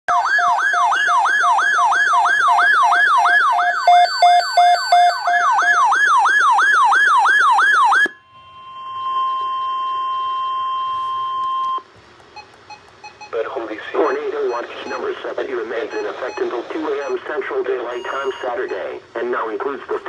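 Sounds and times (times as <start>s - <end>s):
electronic siren sweeping downward: 0.1s - 11.8s.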